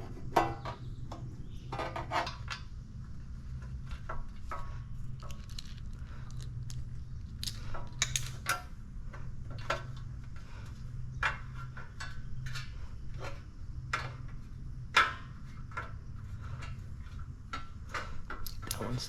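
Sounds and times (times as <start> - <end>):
steady low hum: 0.0 - 19.0
metallic tool clicks and taps: 18.4 - 18.9.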